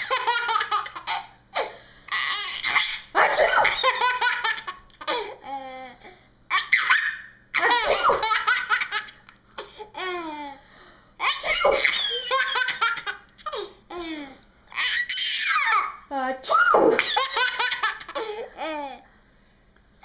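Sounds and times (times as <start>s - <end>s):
baby laughing: 0.0s - 5.9s, 6.5s - 10.5s, 11.2s - 16.0s, 16.7s - 19.0s
baby squealing: 14.8s - 17.0s.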